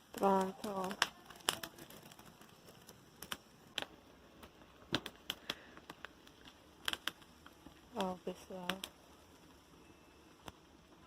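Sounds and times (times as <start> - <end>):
bonfire crackling: 0.0 - 11.0.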